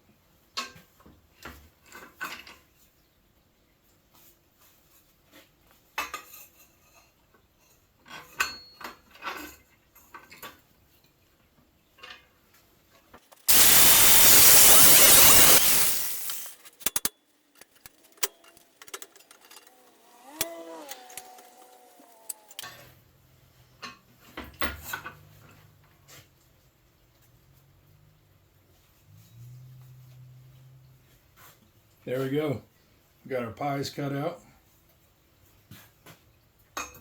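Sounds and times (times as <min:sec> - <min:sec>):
metal-cutting tool cutting steel: 0:13.5 - 0:17.1, 0:17.8 - 0:22.8.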